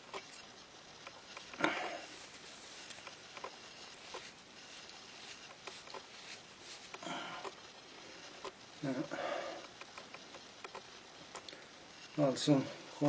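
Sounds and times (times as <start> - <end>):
light rustling scrape: 1.7 - 7.6.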